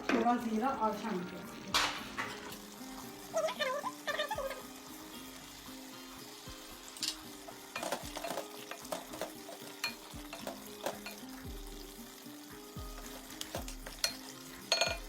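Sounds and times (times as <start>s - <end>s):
meat sizzling in a pot: 0.0s - 15.0s
soft background music: 0.0s - 15.0s
spoon stirring and scraping pot: 6.8s - 11.8s, 12.8s - 15.0s.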